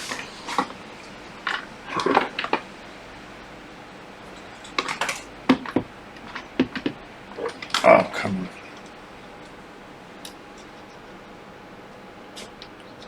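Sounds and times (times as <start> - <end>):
small objects clicking on bench: 4.4 - 7.8.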